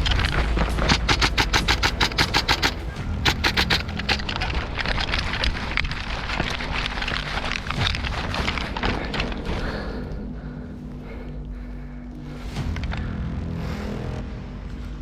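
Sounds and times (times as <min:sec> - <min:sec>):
scattered clicks: 0:00.0 - 0:10.2
rustling: 0:00.0 - 0:10.4
airsoft rifle firing bursts: 0:00.8 - 0:04.1.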